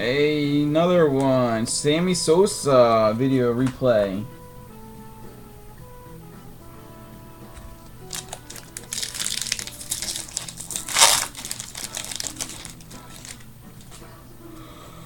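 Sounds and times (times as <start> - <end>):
plastic wrappers crinkling: 7.9 - 14.0.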